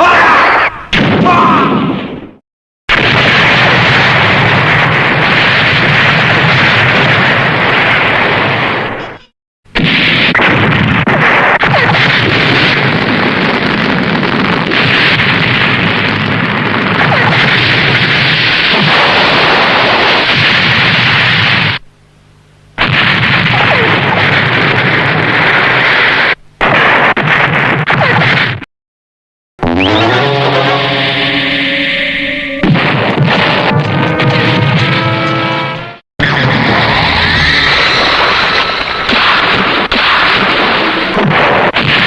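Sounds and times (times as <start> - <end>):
explosion blast noise: 0.9 - 21.8, 32.6 - 35.6, 36.2 - 42.0.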